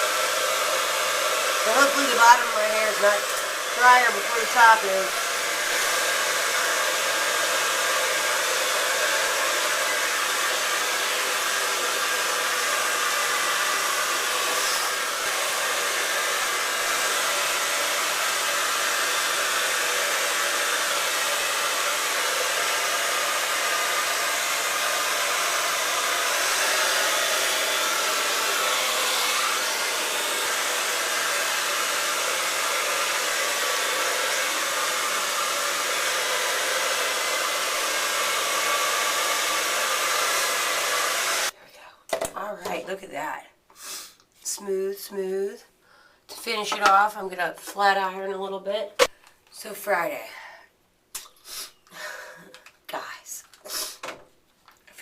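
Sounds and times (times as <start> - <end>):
hair dryer running: 0.0 - 41.6, 46.3 - 48.0.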